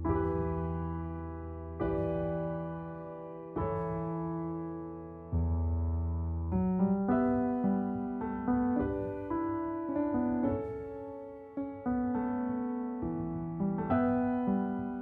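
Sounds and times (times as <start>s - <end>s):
slow piano chords: 0.0s - 15.0s.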